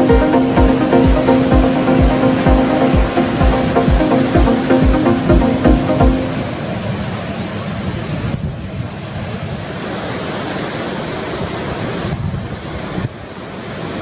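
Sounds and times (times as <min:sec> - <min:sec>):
ocean surf breaking: 0:00.0 - 0:08.3.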